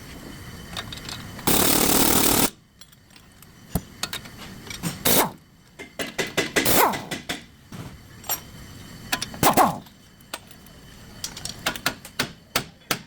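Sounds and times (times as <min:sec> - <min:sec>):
power tool burst: 0:01.5 - 0:02.5.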